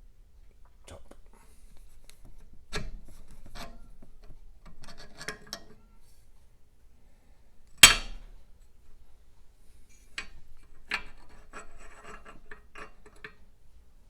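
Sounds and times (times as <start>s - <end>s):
sharp metallic clank: 7.8s - 8.3s.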